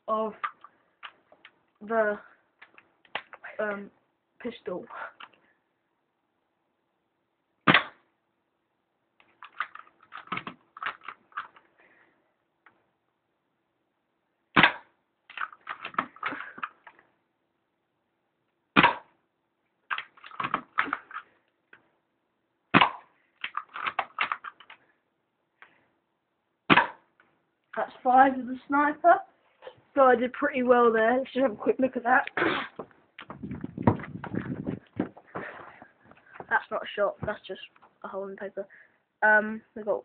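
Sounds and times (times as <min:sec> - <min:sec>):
airsoft rifle shots: 0:07.7 - 0:08.0, 0:14.6 - 0:14.9.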